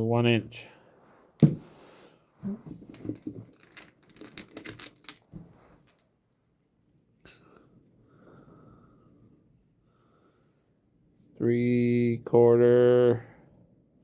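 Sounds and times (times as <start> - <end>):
steel sockets clinking: 2.8 - 6.0.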